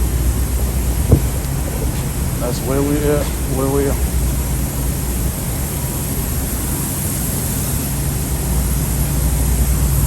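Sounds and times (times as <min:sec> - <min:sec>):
diesel truck engine idling: 0:00.0 - 0:07.2.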